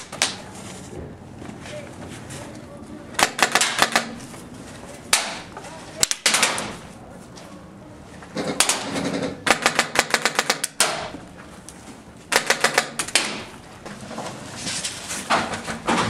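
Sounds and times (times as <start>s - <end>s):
airsoft gun firing full auto: 3.2s - 4.1s, 8.6s - 11.1s, 12.3s - 13.5s.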